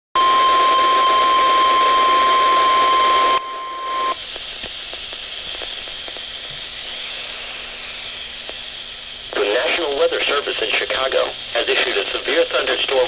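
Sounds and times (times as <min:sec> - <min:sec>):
steady high alarm tone: 0:00.2 - 0:04.2
radio static hiss with crackles: 0:00.2 - 0:13.0.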